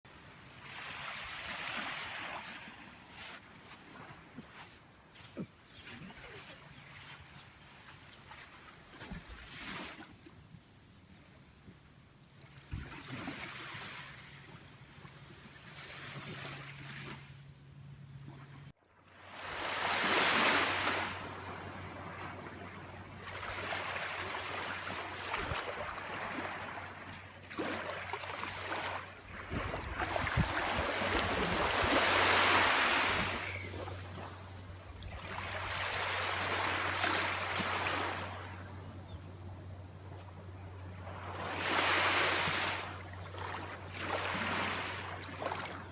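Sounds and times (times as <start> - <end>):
sea waves breaking on beach: 0.4 - 7.3, 19.2 - 38.8, 40.9 - 45.9.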